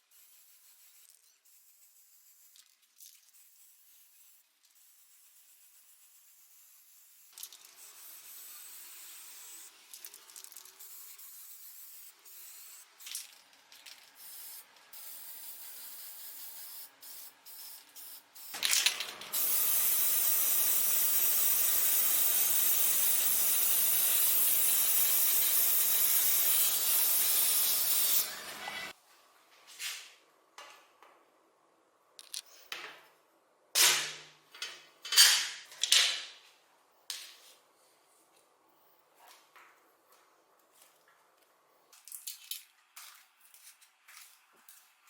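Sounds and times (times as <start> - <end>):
handling with small clicks: 32.2 - 32.7.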